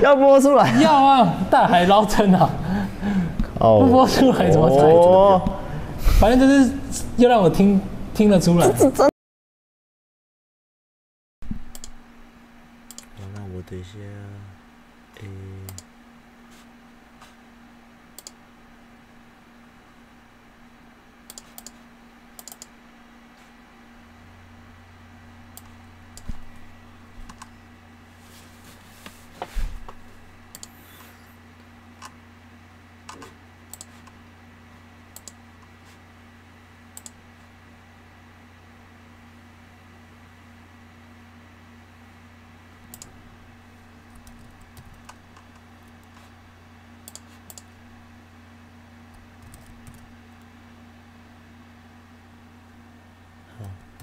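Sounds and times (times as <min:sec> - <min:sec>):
steady low hum: 0:00.0 - 0:09.1, 0:11.4 - 0:54.0
computer keyboard clicks: 0:11.7 - 0:12.0, 0:12.9 - 0:13.5, 0:18.2 - 0:18.4, 0:21.3 - 0:21.8, 0:22.4 - 0:22.7, 0:30.5 - 0:30.8, 0:33.1 - 0:33.9, 0:35.2 - 0:35.4, 0:42.9 - 0:43.1, 0:47.0 - 0:47.7, 0:49.4 - 0:50.1.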